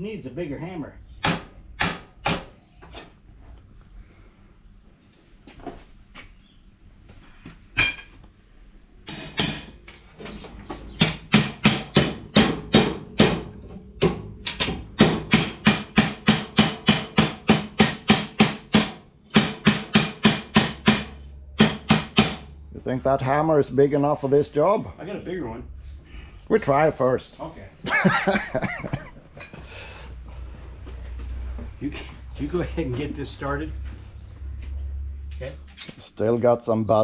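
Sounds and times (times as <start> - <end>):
hammer on metal: 1.2 - 2.6, 11.0 - 22.5.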